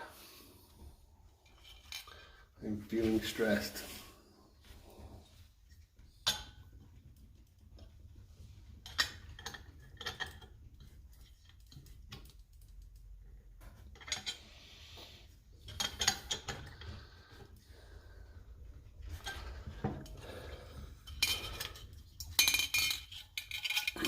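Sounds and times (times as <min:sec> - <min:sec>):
small metal parts clinking: 0:21.0 - 0:24.0.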